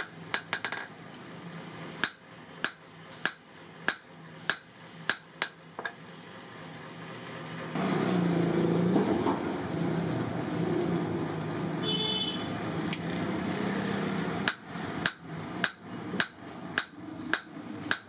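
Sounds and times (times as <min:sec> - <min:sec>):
hammer striking steel on anvil: 0:02.0 - 0:05.9.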